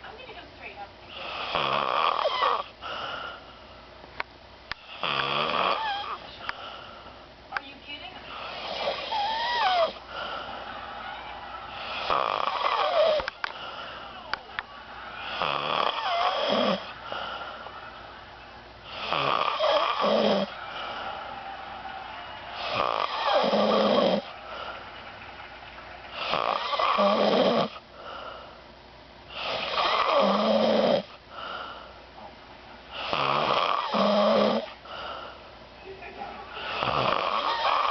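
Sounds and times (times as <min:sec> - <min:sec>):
person snoring: 0:01.2 - 0:03.4, 0:04.8 - 0:06.2, 0:08.4 - 0:10.7, 0:11.8 - 0:14.2, 0:15.2 - 0:17.6, 0:18.9 - 0:21.0, 0:22.6 - 0:24.6, 0:26.2 - 0:27.8, 0:29.3 - 0:31.2, 0:32.9 - 0:34.8, 0:36.6 - 0:37.9
soft breathing: 0:02.8 - 0:03.9, 0:05.8 - 0:07.3, 0:08.2 - 0:10.9, 0:12.9 - 0:15.4, 0:27.8 - 0:28.7, 0:31.1 - 0:32.3, 0:34.7 - 0:35.6.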